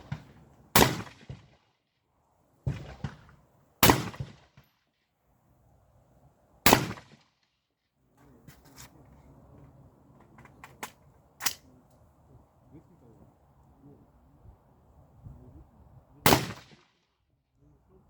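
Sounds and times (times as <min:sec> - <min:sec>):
carbine shots echoing: 0:00.0 - 0:01.6, 0:02.7 - 0:04.6, 0:06.6 - 0:07.2, 0:16.3 - 0:16.8.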